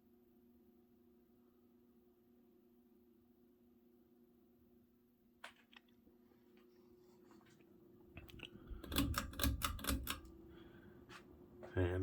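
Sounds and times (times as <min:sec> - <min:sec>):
ceiling fan motor hum: 0:06.7 - 0:12.0
sharp clicks and rattles: 0:08.2 - 0:10.3.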